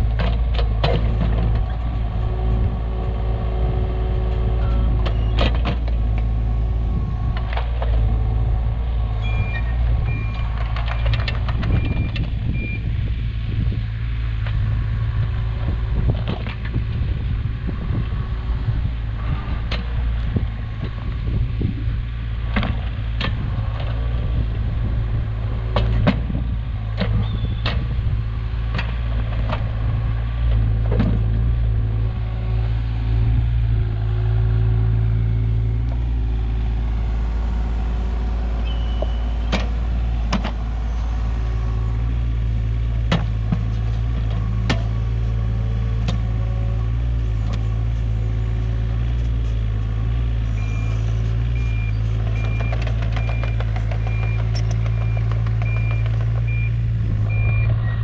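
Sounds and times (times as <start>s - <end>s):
excavator knocks and clanks: 0.0s - 2.5s, 4.3s - 6.3s, 9.2s - 12.8s, 16.0s - 16.8s, 22.4s - 24.3s, 25.6s - 31.7s, 38.6s - 40.8s, 42.6s - 47.6s, 50.6s - 57.8s
excavator diesel engine running: 0.0s - 58.0s.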